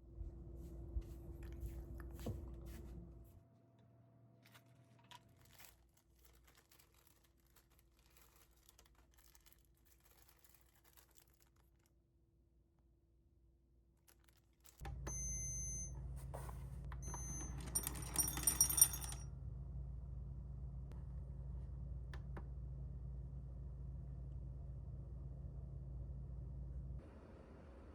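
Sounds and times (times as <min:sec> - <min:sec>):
steady low hum: 0:00.0 - 0:03.4, 0:19.3 - 0:27.9.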